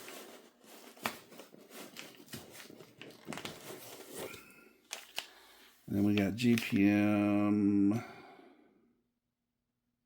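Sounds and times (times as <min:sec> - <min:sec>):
plastic packaging crinkling: 0:00.0 - 0:07.1.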